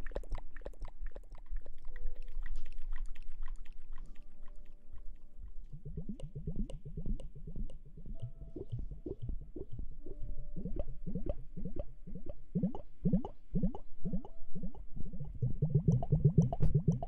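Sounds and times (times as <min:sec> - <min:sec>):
wet squishing of hair washing: 0:00.0 - 0:06.9.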